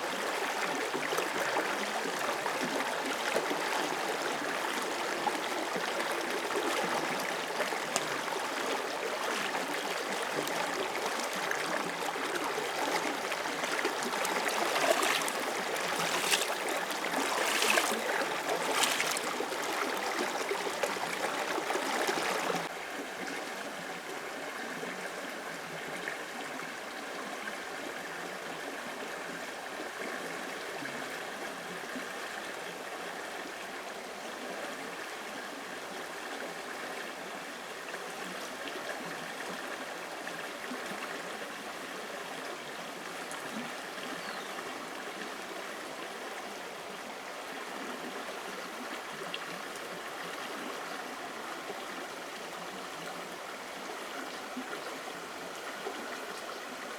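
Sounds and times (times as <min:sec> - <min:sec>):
running water rushing: 0:00.2 - 0:22.7.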